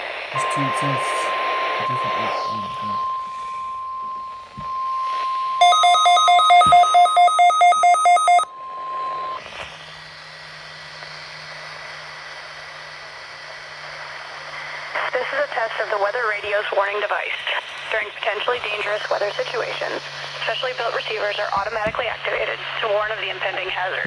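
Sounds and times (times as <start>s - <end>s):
radio hum and hiss: 0.0s - 5.8s, 8.2s - 24.0s
alert beeper pulsing: 0.4s - 9.4s
steady alarm tone: 0.4s - 9.4s.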